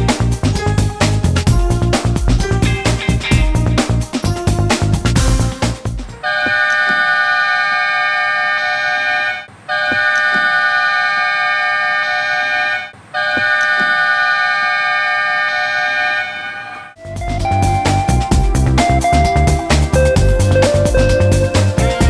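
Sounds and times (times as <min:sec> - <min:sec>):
music: 0:00.0 - 0:06.3, 0:17.0 - 0:22.0
warning horn multi-tone blasts: 0:06.2 - 0:17.0.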